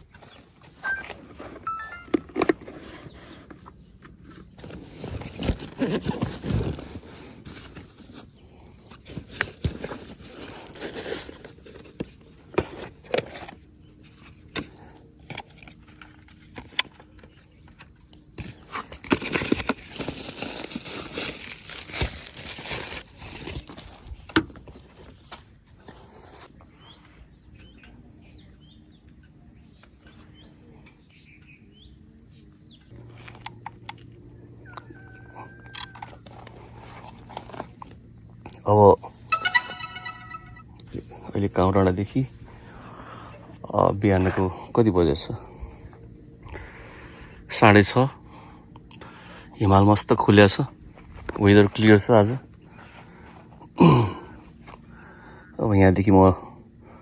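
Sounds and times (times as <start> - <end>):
high-pitched insect drone: 33.0 - 44.0.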